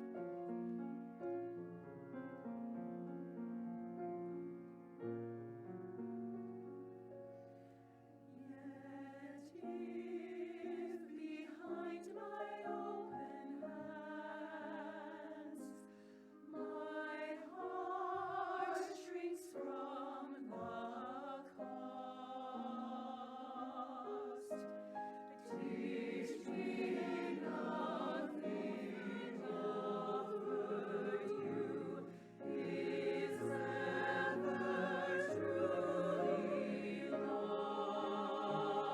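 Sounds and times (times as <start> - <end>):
choir singing a hymn: 8.4 - 38.9
held keyboard accompaniment: 24.7 - 38.9.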